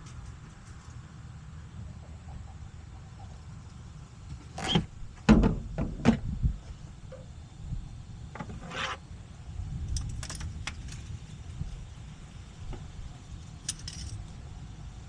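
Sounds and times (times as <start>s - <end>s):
scraping rustle: 8.4s - 9.1s
tools and metal parts clinking: 9.9s - 11.0s, 13.6s - 14.3s.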